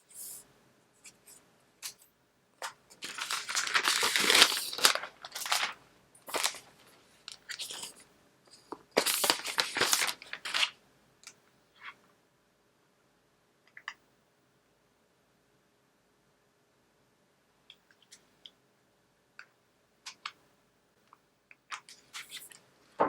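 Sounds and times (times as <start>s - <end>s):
paper and plastic crinkling: 2.6s - 8.0s, 8.9s - 10.8s.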